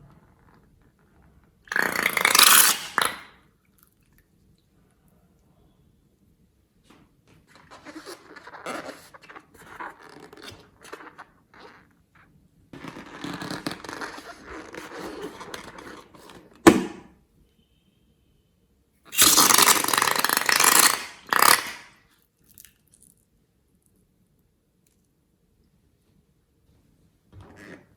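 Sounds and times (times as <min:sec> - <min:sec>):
slime squishing by hand: 0:19.2 - 0:21.8.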